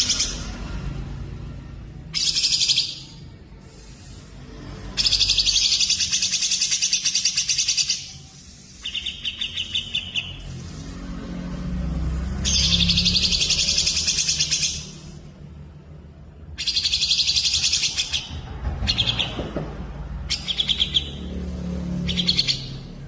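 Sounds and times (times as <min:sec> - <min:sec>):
fast high-pitched bird trilling: 0:00.0 - 0:00.6, 0:02.1 - 0:04.3, 0:04.9 - 0:10.8, 0:12.4 - 0:15.2, 0:16.5 - 0:19.4, 0:20.2 - 0:21.3, 0:22.0 - 0:23.0.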